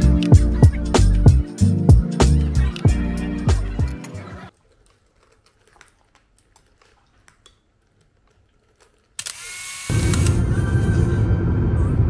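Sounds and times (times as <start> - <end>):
background music with beat: 0.0 - 4.5.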